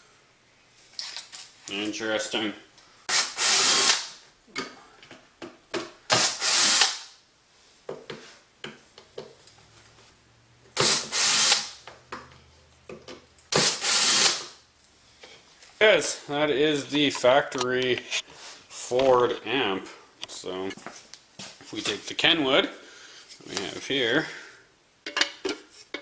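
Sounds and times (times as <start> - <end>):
power drill bursts: 3.1 - 4.2, 6.1 - 7.1, 10.8 - 11.8, 13.5 - 14.6.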